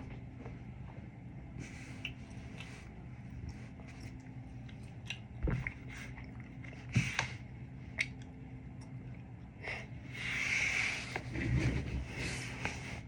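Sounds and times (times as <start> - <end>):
steady low hum: 0.0 - 13.0
person chewing food: 1.9 - 9.5.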